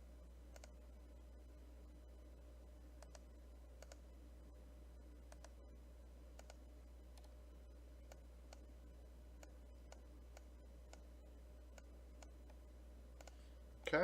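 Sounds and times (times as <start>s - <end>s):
steady low hum: 0.0s - 14.0s
faint computer mouse clicks: 0.5s - 0.8s, 3.0s - 4.0s, 5.3s - 5.6s, 6.4s - 7.4s, 8.1s - 8.7s, 9.4s - 11.1s, 13.2s - 13.4s.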